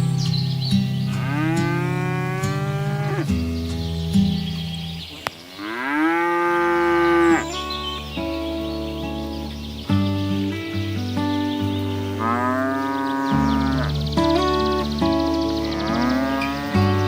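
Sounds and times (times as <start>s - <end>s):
cattle mooing: 1.1s - 3.3s, 5.6s - 7.6s, 12.2s - 14.0s, 15.7s - 17.0s.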